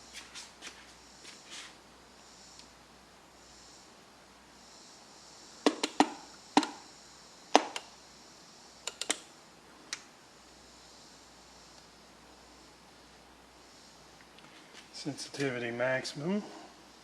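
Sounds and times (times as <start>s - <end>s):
radio switches clicking: 8.9s - 9.2s.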